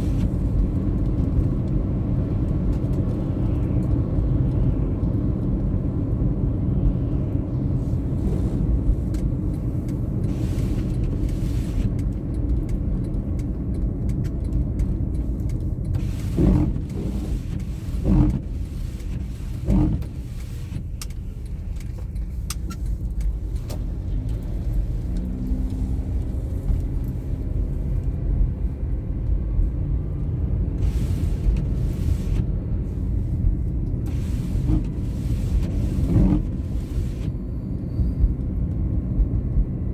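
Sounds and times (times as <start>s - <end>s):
car road and engine rumble: 0.0s - 39.9s
car bumps: 16.0s - 20.8s.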